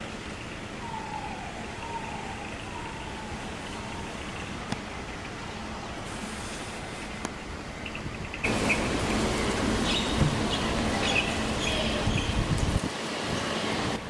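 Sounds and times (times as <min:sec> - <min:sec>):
steady background rumble and hiss: 0:00.0 - 0:14.0
distant siren wailing: 0:00.1 - 0:05.9.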